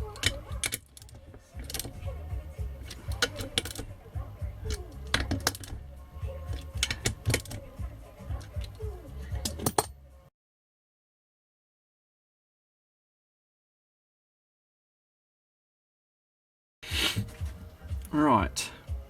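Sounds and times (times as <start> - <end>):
metal tools clicking: 0.0 - 10.0.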